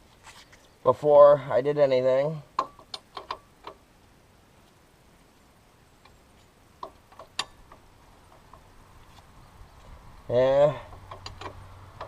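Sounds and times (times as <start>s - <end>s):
wrench clicking on metal: 10.9s - 12.0s.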